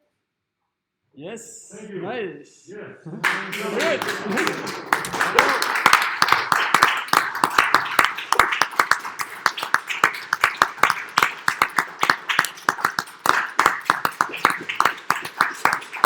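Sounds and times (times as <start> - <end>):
people applauding: 3.2 - 16.0.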